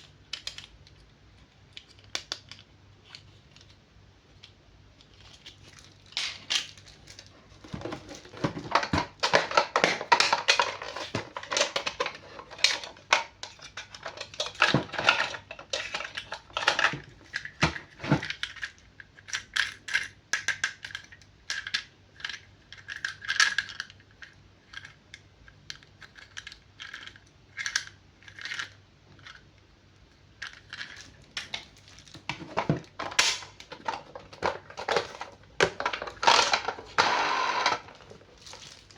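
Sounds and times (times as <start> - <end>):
plastic toy packaging being opened: 0.0 - 29.5, 30.4 - 38.9.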